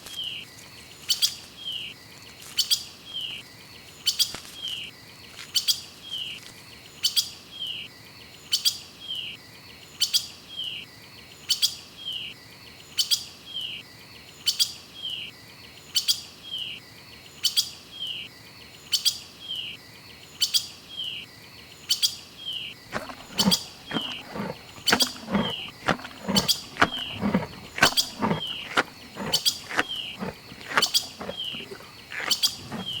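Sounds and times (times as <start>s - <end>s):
bird chirping: 22.9s - 33.0s.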